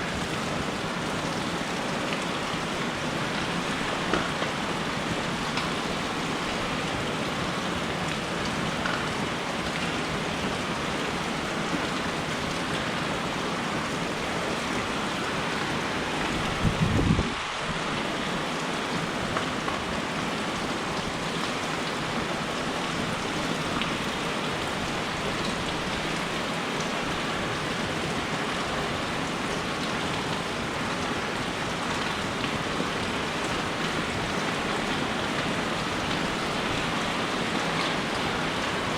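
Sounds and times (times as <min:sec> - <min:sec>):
rain pattering: 0:00.0 - 0:38.9.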